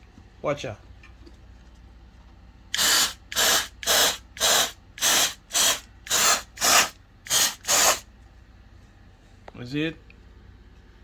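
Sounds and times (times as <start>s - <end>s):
aerosol can spraying in hissing bursts: 2.8s - 8.0s.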